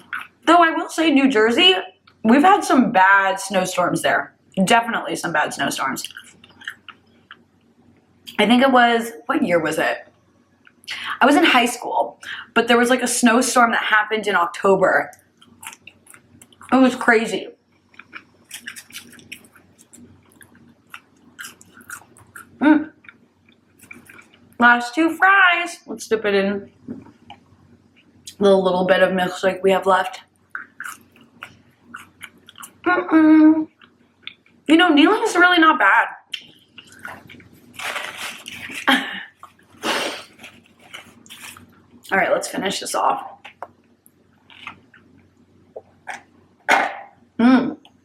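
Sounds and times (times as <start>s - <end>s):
eating sounds: 0.0s - 0.4s, 6.0s - 8.4s, 17.8s - 24.6s, 30.4s - 34.6s, 36.3s - 42.0s, 44.3s - 46.4s
person chewing fries: 0.0s - 0.4s, 6.0s - 7.7s, 15.2s - 16.8s, 17.8s - 24.6s, 30.4s - 32.8s, 33.7s - 34.6s, 36.3s - 42.1s, 43.4s - 46.3s
wet mouth clicks and smacks: 30.5s - 32.7s
person humming: 32.9s - 33.6s, 47.4s - 47.8s.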